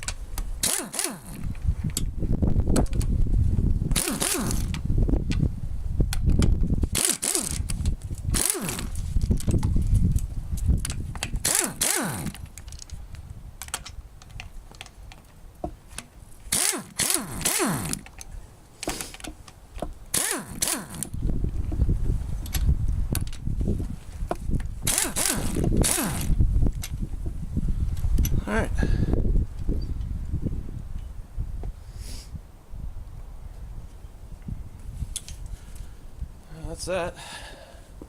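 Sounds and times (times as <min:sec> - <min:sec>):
socket ratchet clicking: 0:00.6 - 0:01.5, 0:10.9 - 0:12.5, 0:16.5 - 0:18.3, 0:20.1 - 0:21.1, 0:24.9 - 0:26.4.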